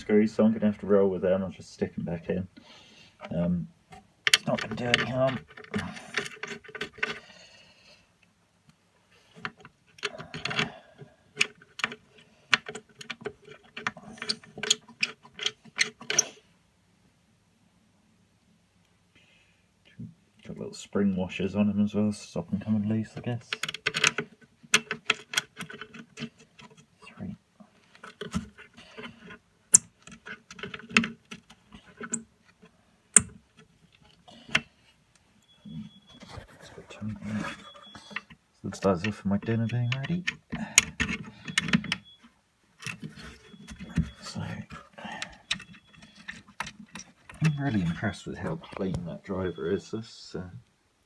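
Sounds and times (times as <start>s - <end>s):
hardware clicks and knocks: 3.2s - 7.2s, 9.4s - 16.3s, 23.1s - 26.9s, 27.9s - 34.8s, 37.0s - 49.1s
metal screws clicking and rattling: 4.2s - 7.3s, 11.4s - 16.4s, 23.5s - 26.8s.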